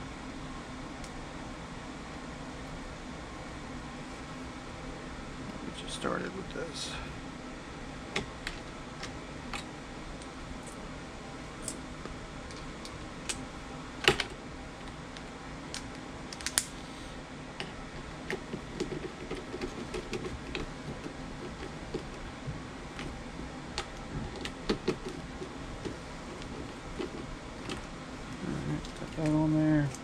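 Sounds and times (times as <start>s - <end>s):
steady background noise: 0.0s - 30.0s
hand tools clicking and tapping: 17.6s - 22.2s.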